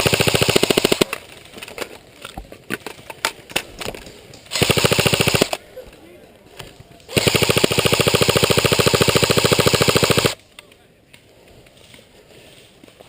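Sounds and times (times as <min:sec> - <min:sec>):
airsoft rifle full-auto burst: 0:00.0 - 0:01.1, 0:04.5 - 0:05.6, 0:07.1 - 0:10.4.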